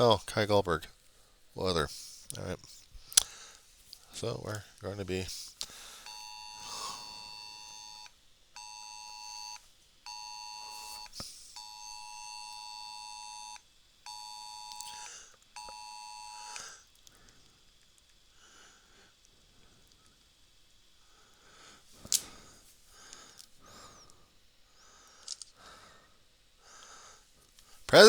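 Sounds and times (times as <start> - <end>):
phone emergency alert tone: 6.0 - 15.0, 15.6 - 16.6.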